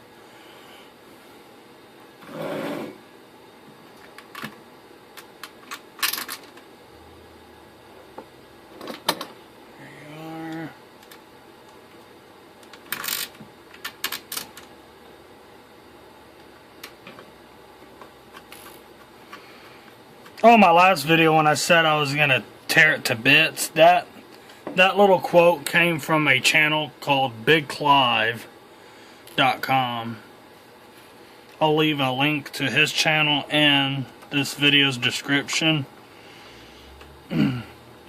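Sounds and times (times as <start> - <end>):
short pitched hum: 6.9 - 8.8.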